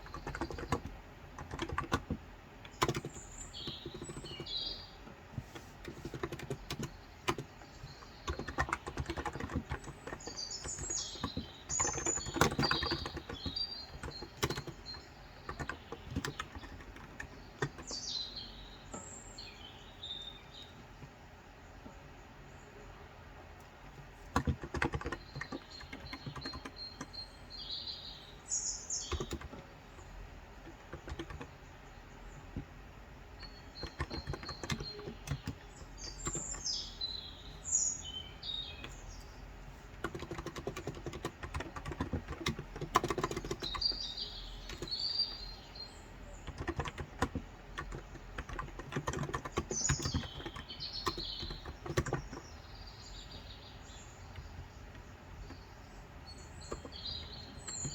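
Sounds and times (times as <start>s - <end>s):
keyboard key clicks: 0.0s - 4.6s, 8.2s - 18.0s, 23.6s - 27.2s, 29.0s - 29.6s, 30.6s - 31.5s, 33.8s - 36.7s, 40.0s - 44.0s, 46.4s - 52.5s
birds chirping: 0.0s - 57.9s.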